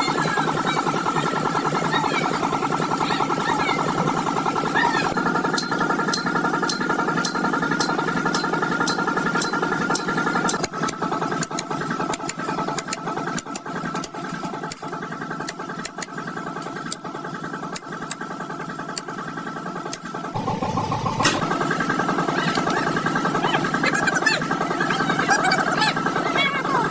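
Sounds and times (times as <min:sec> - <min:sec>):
motor-driven machine running: 0:00.0 - 0:26.9
sharp ticks: 0:05.5 - 0:16.1.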